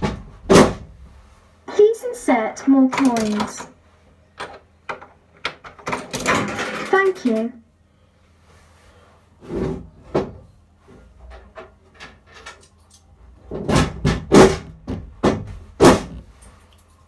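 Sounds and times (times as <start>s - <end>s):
knocks on kiddie ride: 0.0s - 1.0s, 13.6s - 16.2s.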